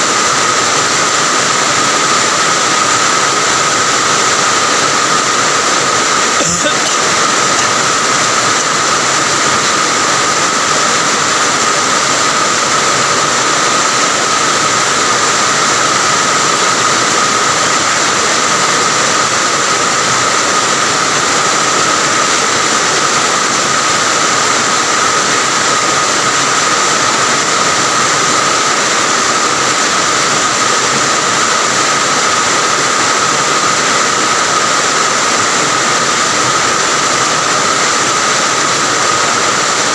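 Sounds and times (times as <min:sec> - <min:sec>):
heavy rain: 0:00.0 - 0:39.9
steady thin tone: 0:06.2 - 0:09.0.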